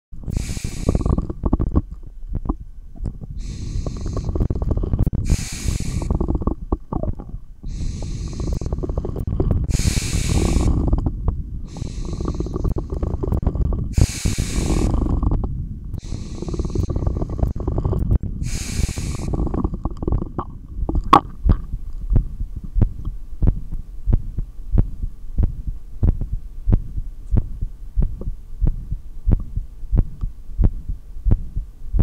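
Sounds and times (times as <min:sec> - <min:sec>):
stomach growls: 0:00.2 - 0:26.3
heartbeat thumps: 0:00.2 - 0:32.0
low rumble: 0:00.2 - 0:32.0
deep breathing through stethoscope: 0:00.3 - 0:01.5, 0:03.3 - 0:06.6, 0:07.6 - 0:20.4.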